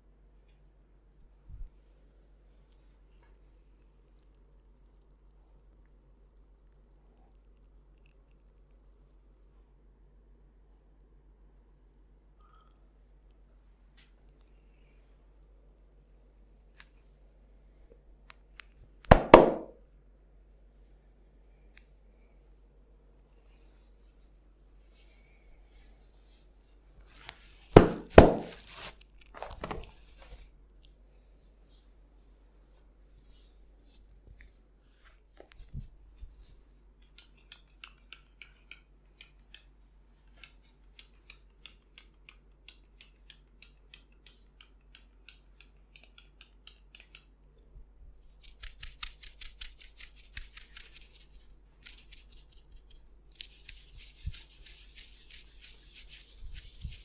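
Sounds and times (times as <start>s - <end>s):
loud thumps: 19.1s - 19.7s
hands rubbing over hair and skin: 23.4s - 30.5s, 31.3s - 36.8s, 48.2s - 57.0s.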